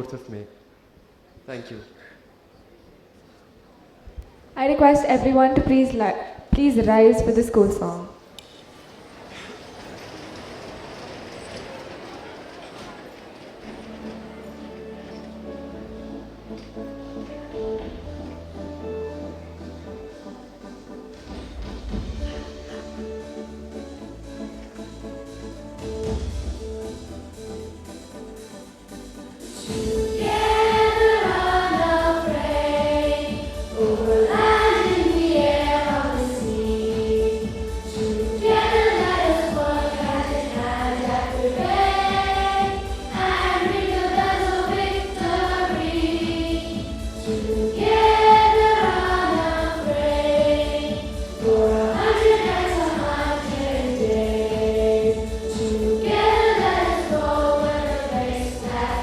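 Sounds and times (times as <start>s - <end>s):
instrumental accompaniment: 13.2s - 59.0s
chorus of voices singing: 29.5s - 59.0s.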